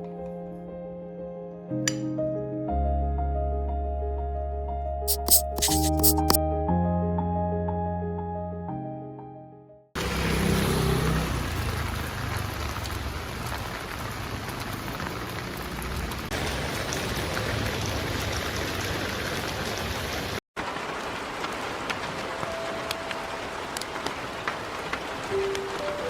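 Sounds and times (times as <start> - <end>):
steady rain: 11.2 - 26.0.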